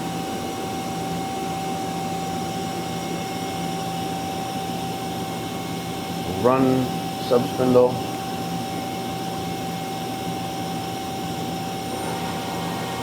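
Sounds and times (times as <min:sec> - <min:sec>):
machine hum with high whine: 0:00.0 - 0:13.0
lower machine hum: 0:10.8 - 0:13.0.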